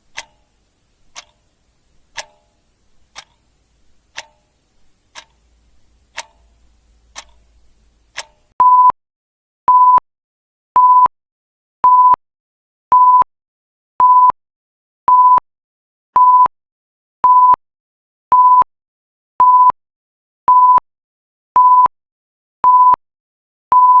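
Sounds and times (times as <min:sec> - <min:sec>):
electronic timer alarm beeping: 0:08.6 - 0:08.9, 0:16.2 - 0:16.5, 0:17.2 - 0:17.6, 0:21.6 - 0:21.9, 0:22.7 - 0:23.0, 0:23.7 - 0:24.0.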